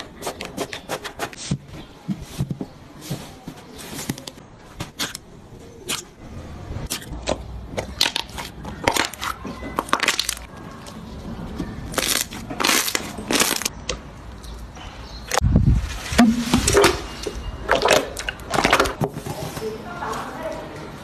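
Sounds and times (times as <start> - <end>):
slime crackling crunches: 7.9 - 10.5, 11.9 - 13.7.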